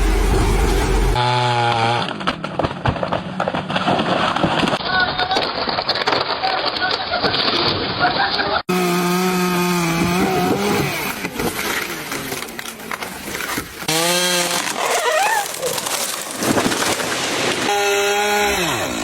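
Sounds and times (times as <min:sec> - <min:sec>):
rough unpitched noise: 0:00.0 - 0:01.2
chainsaw revving: 0:08.7 - 0:12.3, 0:13.8 - 0:15.9, 0:16.7 - 0:19.0.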